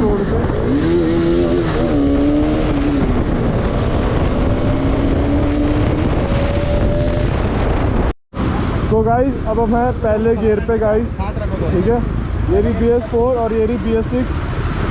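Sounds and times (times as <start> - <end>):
motorcycle engine revving: 0.0 - 8.1.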